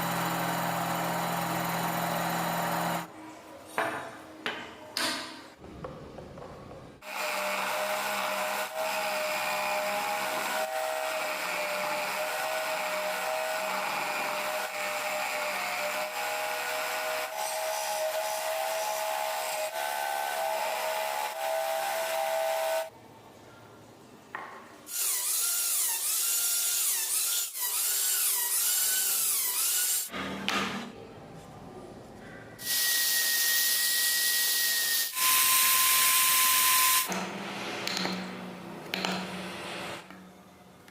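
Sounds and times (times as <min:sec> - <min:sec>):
power tool whining on wood: 0:00.0 - 0:03.1.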